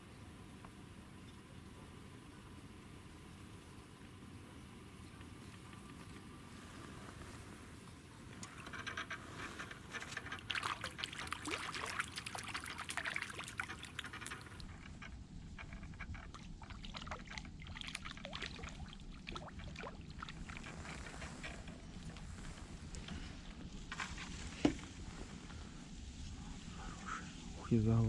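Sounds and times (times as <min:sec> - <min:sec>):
water trickling and dripping: 0:10.2 - 0:14.7, 0:16.0 - 0:20.9.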